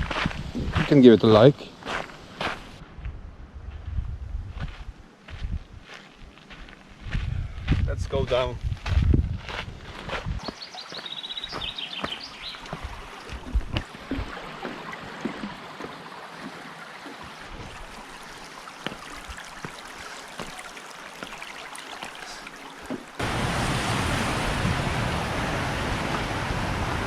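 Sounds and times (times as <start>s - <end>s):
footsteps on a trail: 0.0s - 17.8s
rushing river water: 10.5s - 27.0s.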